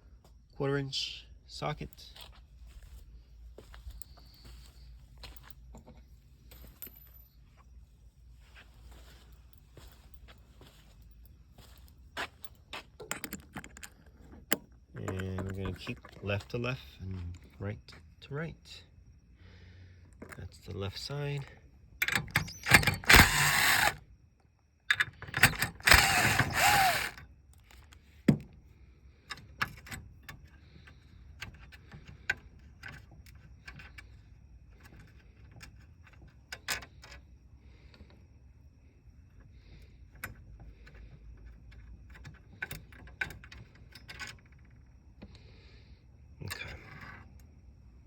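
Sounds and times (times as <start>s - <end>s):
metal parts clicking and tapping: 12.9s - 16.3s, 22.0s - 24.0s
socket ratchet clicking: 22.0s - 24.0s, 24.9s - 27.2s.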